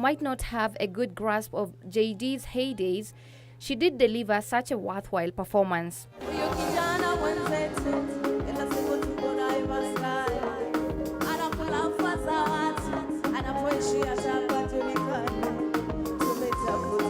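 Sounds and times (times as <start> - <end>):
person singing: 6.2 - 17.0.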